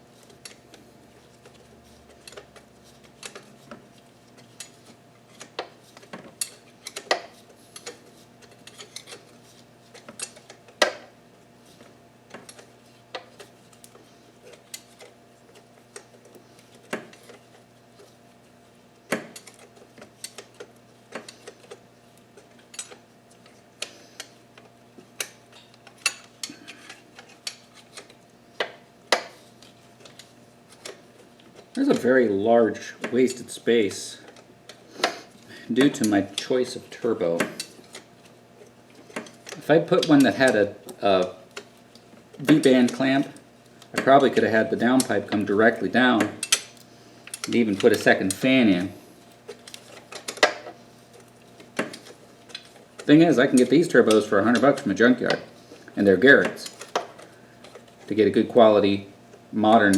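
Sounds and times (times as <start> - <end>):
metal tools clinking: 56.4 - 57.0.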